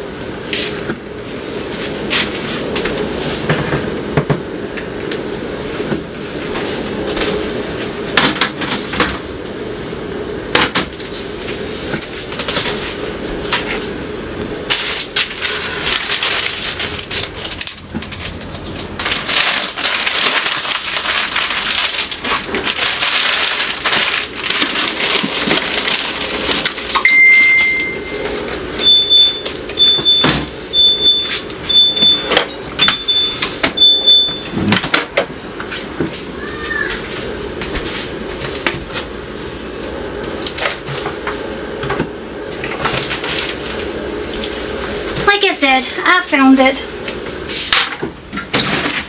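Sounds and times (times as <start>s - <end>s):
long electronic beep: 27.0s - 28.2s, 28.8s - 34.5s
short high electronic beeps: 27.1s - 28.2s.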